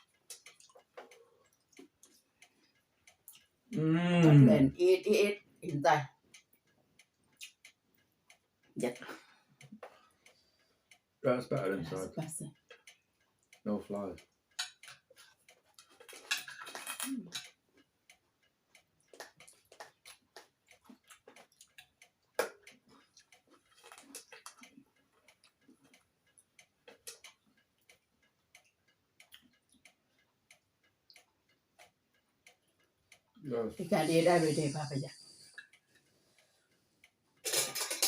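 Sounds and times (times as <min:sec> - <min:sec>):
chewing and utensil clicks: 0:00.0 - 0:03.7, 0:06.3 - 0:11.1, 0:12.0 - 0:13.6, 0:14.2 - 0:33.4, 0:35.3 - 0:38.0.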